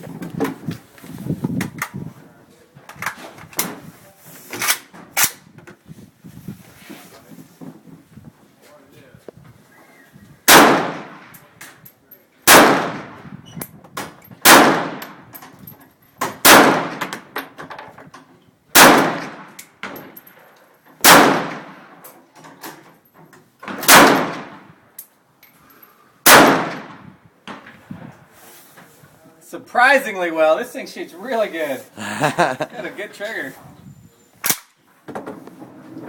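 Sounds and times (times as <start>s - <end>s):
rifle shots with echo: 10.5s - 11.4s, 12.4s - 13.2s, 14.4s - 15.2s, 16.4s - 17.3s, 18.7s - 19.6s, 21.0s - 22.0s, 23.7s - 24.7s, 26.2s - 27.0s.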